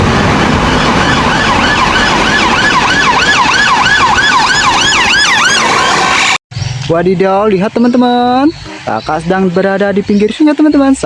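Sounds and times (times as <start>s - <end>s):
higher-pitched siren: 0.0s - 6.4s
siren yelping: 0.6s - 6.4s.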